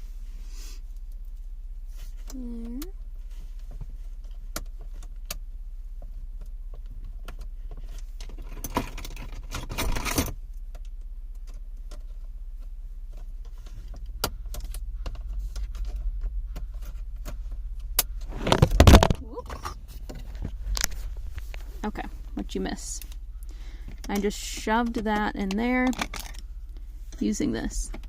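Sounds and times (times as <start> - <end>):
low hum: 0.0 - 28.0
rustling scrape: 18.2 - 22.3.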